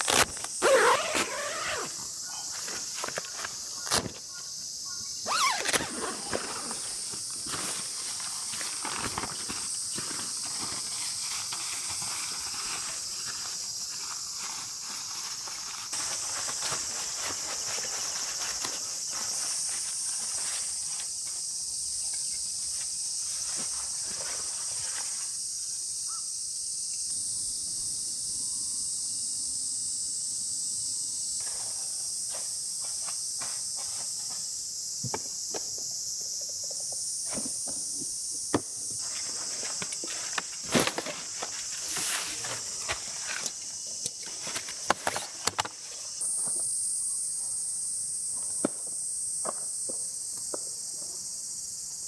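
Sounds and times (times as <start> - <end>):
insects chorus: 0.0 - 52.0
clicks and rustles of handling: 38.7 - 46.6.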